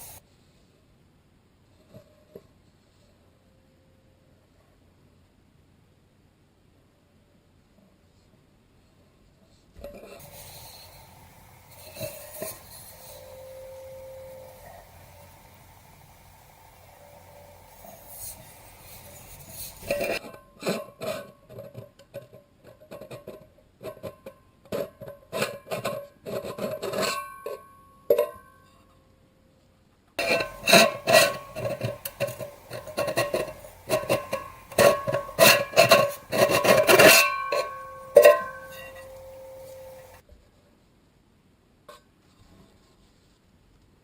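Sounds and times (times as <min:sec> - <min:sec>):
metal pot clinking: 0:30.2 - 0:40.2.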